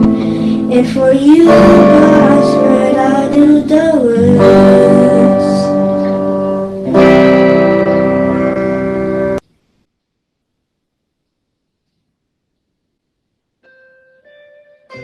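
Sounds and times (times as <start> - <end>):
person singing: 0.0 - 6.9
guitar: 0.0 - 9.4, 13.6 - 15.0.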